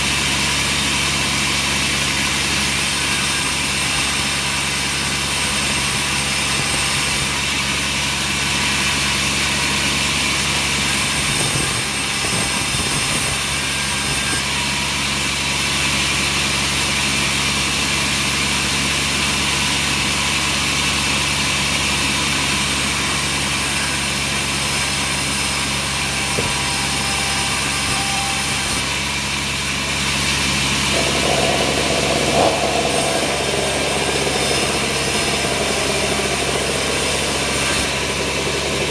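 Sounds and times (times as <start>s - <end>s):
sawmill machinery humming: 0.0s - 38.9s
higher-pitched machine sound: 30.2s - 38.9s.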